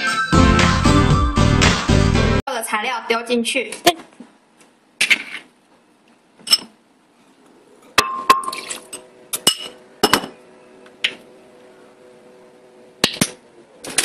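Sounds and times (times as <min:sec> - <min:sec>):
utensils clinking against glass dishes: 0:08.0 - 0:10.4.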